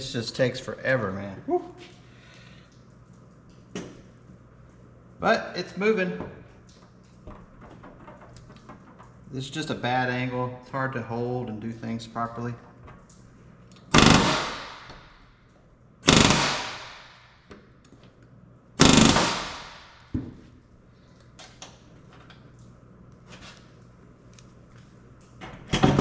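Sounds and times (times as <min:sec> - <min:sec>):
pneumatic rivet gun hammering: 0:13.9 - 0:15.2, 0:16.0 - 0:17.3, 0:18.8 - 0:20.2.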